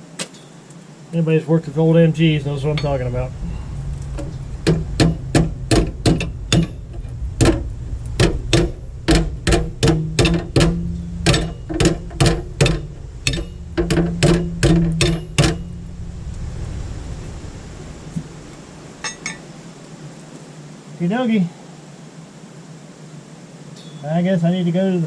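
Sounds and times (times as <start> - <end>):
steady low hum: 0.9 - 23.4
hammer striking steel: 4.2 - 15.9.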